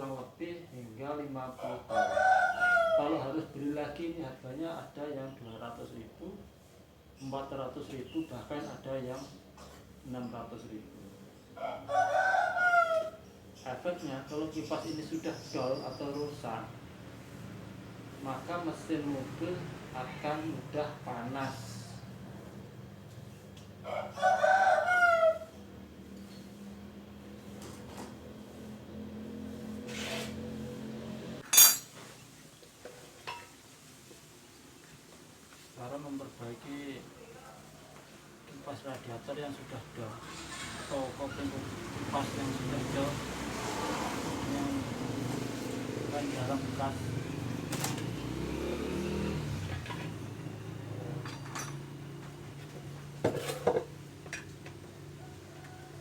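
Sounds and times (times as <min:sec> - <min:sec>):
light metal clinks: 0:31.4 - 0:32.0
metallic clank: 0:31.4 - 0:32.0.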